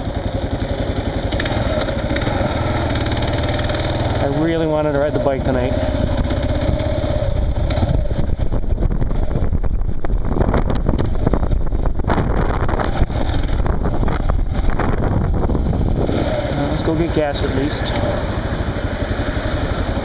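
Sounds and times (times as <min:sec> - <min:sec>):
motorcycle engine running: 0:00.0 - 0:20.0
wind rush on microphone: 0:05.4 - 0:20.0.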